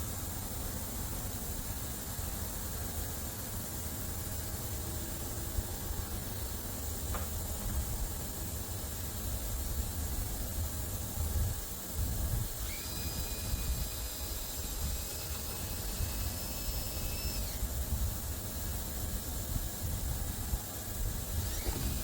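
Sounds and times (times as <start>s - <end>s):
small motor whining: 12.4s - 17.9s, 21.2s - 22.0s.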